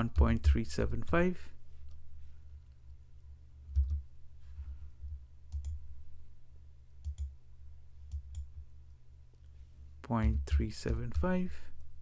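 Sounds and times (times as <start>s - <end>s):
low steady hum: 0.0s - 12.0s
computer mouse clicking: 3.7s - 4.1s, 5.0s - 5.8s, 7.0s - 7.4s, 8.0s - 8.6s.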